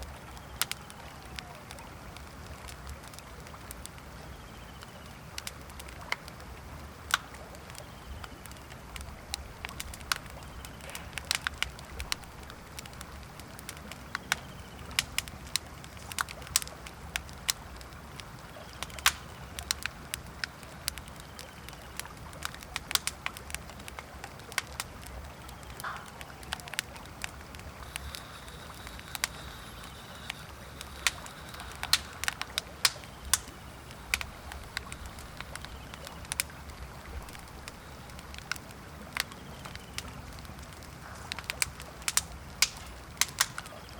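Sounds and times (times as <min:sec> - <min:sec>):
campfire crackling and popping: 0:00.0 - 0:43.9.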